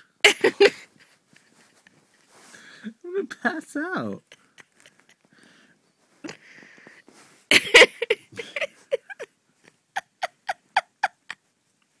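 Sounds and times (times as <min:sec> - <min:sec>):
person laughing: 0:00.2 - 0:02.0, 0:04.2 - 0:05.4, 0:07.5 - 0:11.4.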